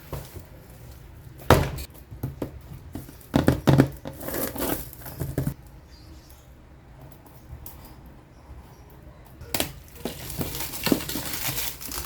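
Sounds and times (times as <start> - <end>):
packaging rustling: 9.6 - 12.0.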